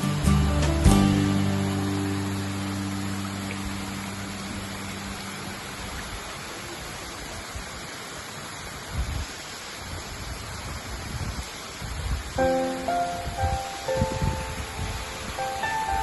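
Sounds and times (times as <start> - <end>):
waterfall rushing: 0.0 - 16.0
music note: 12.4 - 16.0.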